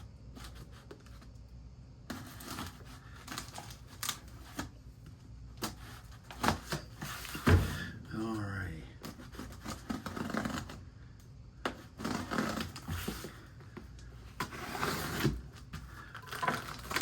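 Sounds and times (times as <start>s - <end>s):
rustling and scraping of packing: 0.0s - 1.4s, 2.1s - 4.8s, 5.5s - 7.9s, 9.0s - 10.9s, 11.7s - 17.0s
cardboard box being opened: 11.7s - 13.5s, 14.2s - 17.0s.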